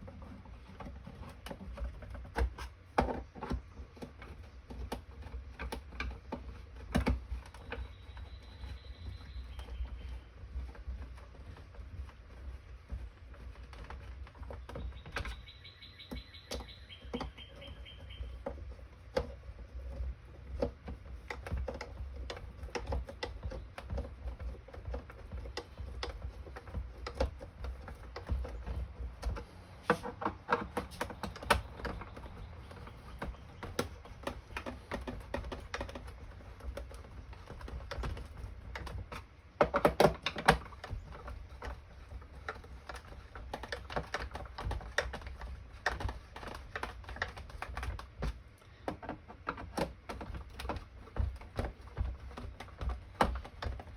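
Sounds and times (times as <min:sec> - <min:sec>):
screwdriver clicks and taps on plastic: 0:16.1 - 0:41.8.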